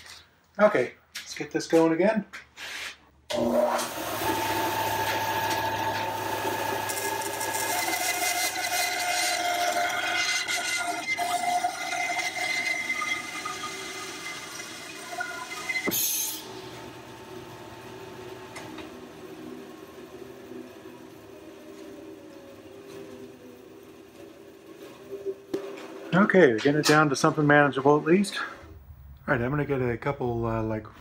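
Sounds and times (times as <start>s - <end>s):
bandsaw cutting wood: 3.3s - 19.6s
bandsaw running idle: 3.3s - 19.6s.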